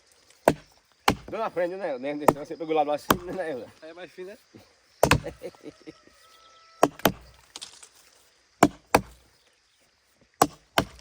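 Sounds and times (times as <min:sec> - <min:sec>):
axe chopping dry wood: 0:00.3 - 0:01.4, 0:02.2 - 0:03.5, 0:05.0 - 0:05.4, 0:06.8 - 0:07.7, 0:08.6 - 0:09.3, 0:10.4 - 0:11.0.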